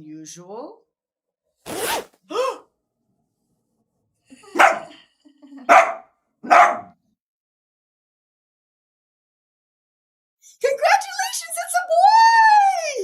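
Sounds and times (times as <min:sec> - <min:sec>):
dog barking: 0:04.5 - 0:05.0, 0:05.7 - 0:07.0.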